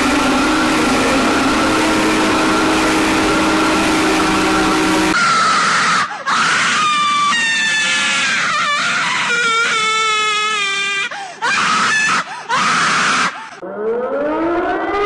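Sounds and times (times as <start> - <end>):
loud static: 0.0 - 5.2
wailing emergency siren: 0.0 - 5.2, 13.6 - 15.0.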